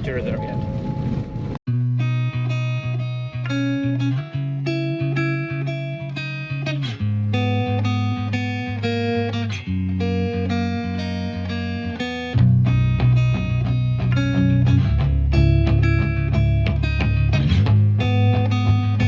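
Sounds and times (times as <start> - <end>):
bass line: 0.0 - 19.0
plucked guitar: 1.7 - 19.0.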